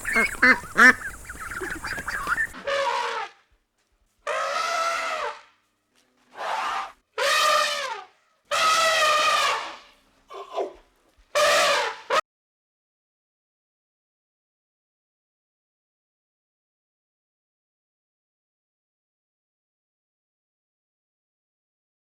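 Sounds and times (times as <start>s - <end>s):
animal calling: 0.0s - 3.3s.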